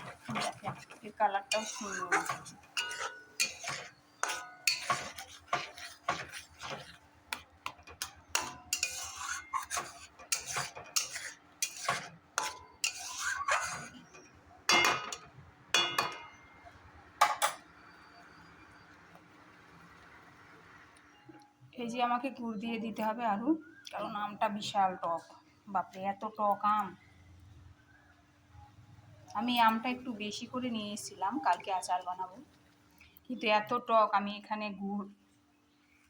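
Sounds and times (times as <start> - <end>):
spoon scraping a cooking pan: 0.0 - 15.2, 31.0 - 32.2.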